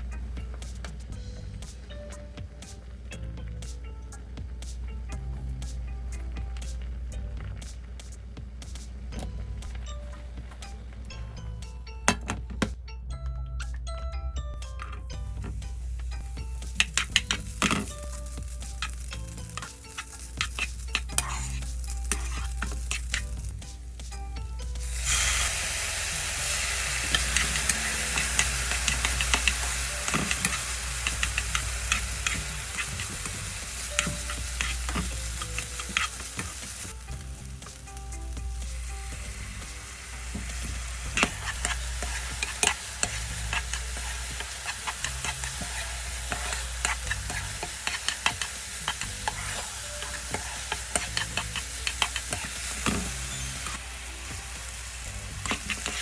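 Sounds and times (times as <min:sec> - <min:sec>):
food sizzling in a frying pan: 0:15.2 - 0:56.0
utensil scraping a pan: 0:16.2 - 0:24.0, 0:24.8 - 0:37.0, 0:39.2 - 0:53.8, 0:55.3 - 0:56.0.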